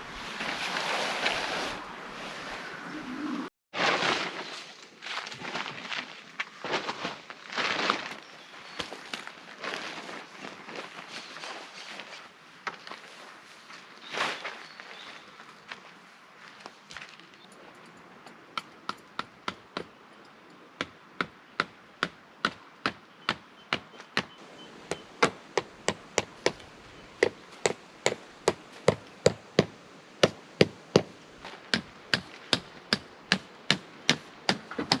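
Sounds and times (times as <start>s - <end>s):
hammer driving tent pegs: 21.2s - 35.0s.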